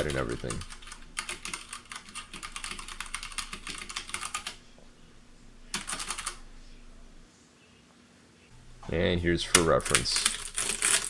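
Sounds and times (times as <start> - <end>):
mechanical keyboard typing: 0.0 - 4.6, 5.7 - 6.4, 9.9 - 11.0.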